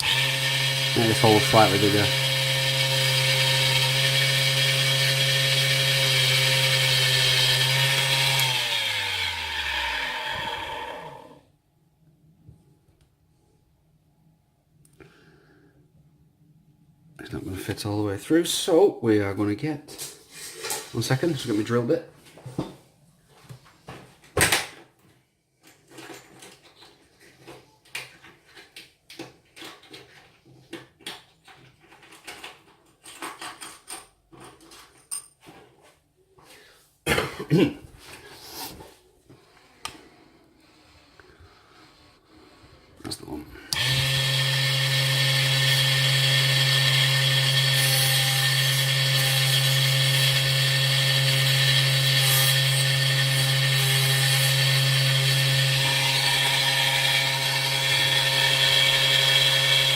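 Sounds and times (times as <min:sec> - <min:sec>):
electric drill humming and whining: 0:00.0 - 0:11.4, 0:43.8 - 0:59.9
small tools clattering: 0:25.6 - 0:35.9.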